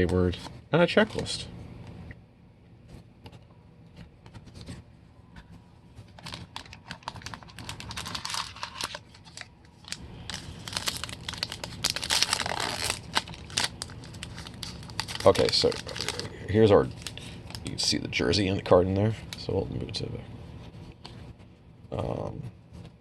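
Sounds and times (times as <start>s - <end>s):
wrapper crinkling and rustling: 6.1s - 17.7s.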